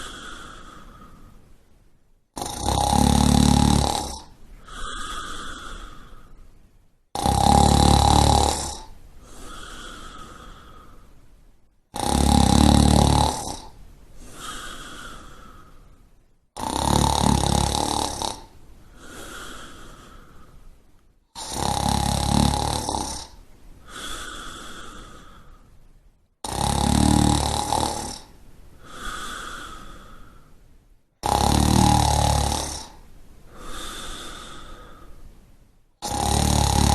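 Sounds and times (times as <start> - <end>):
person snoring: 0.0 - 1.4, 2.4 - 6.4, 7.1 - 11.1, 11.9 - 16.0, 16.6 - 20.6, 21.3 - 25.6, 26.4 - 30.5, 31.2 - 35.1, 36.0 - 36.9
soft breathing: 0.0 - 2.0, 3.9 - 6.8, 8.7 - 11.6, 13.2 - 16.3, 17.8 - 21.1, 22.6 - 26.0, 27.4 - 30.8, 31.8 - 35.6.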